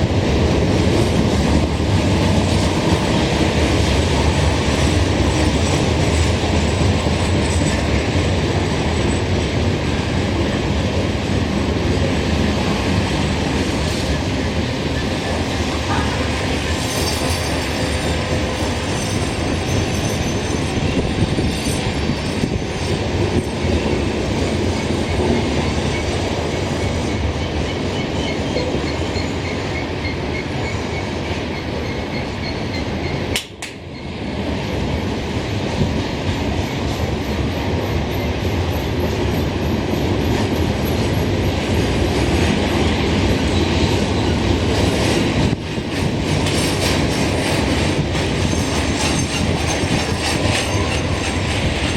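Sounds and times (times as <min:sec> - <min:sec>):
train wheels rumbling on rail: 0:00.0 - 0:51.9
wheel squeal: 0:16.8 - 0:22.6, 0:27.0 - 0:33.3, 0:48.3 - 0:51.9.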